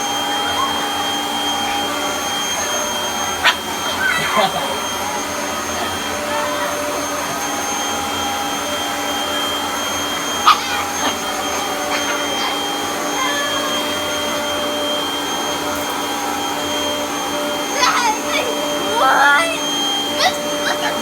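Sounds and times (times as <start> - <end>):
vacuum cleaner motor whining: 0.0 - 21.0
dog barking: 3.2 - 4.7, 10.2 - 12.9, 20.1 - 21.0.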